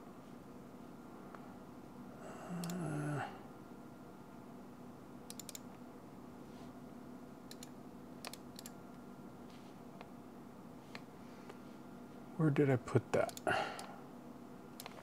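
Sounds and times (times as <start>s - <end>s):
faint electrical hum: 0.0s - 15.0s
computer mouse clicks: 2.6s - 2.8s, 5.3s - 5.8s, 7.5s - 8.8s, 13.3s - 13.9s, 14.7s - 15.0s.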